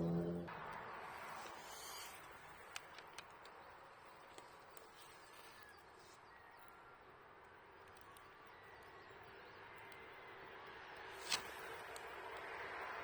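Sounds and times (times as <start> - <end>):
faint bird calls: 0.0 - 0.5.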